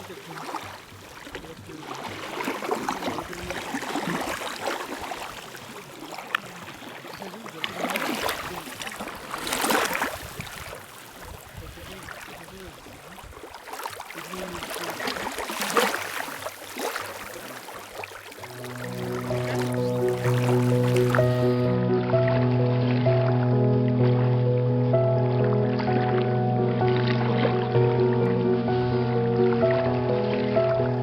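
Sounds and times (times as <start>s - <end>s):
waves lapping at shore: 0.0s - 21.7s.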